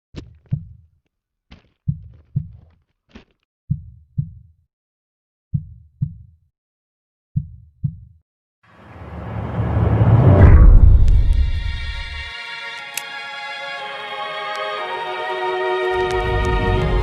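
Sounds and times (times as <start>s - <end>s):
heartbeat thumps: 0.4s - 0.8s, 1.8s - 2.7s, 3.7s - 4.5s, 5.5s - 6.3s, 7.4s - 8.2s.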